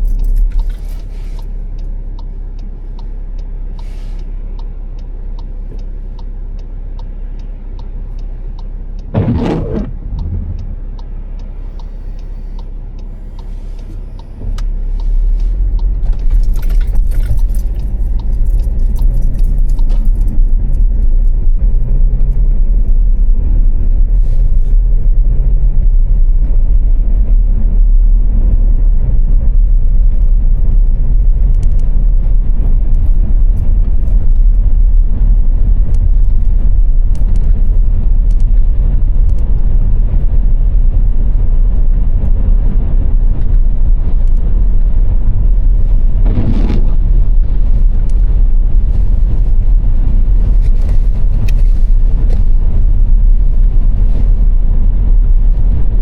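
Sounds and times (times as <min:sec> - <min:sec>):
car road and engine rumble: 0:00.0 - 0:56.0.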